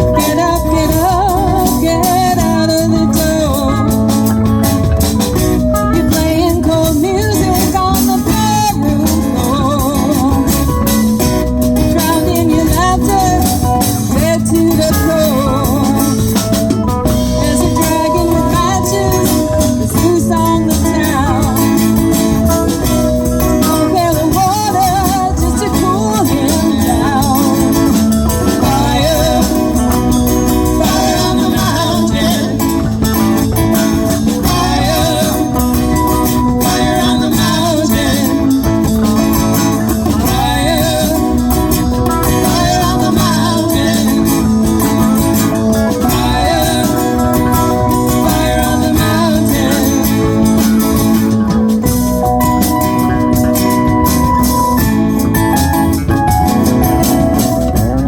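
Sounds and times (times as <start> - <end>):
live rock band playing: 0.0 - 58.0.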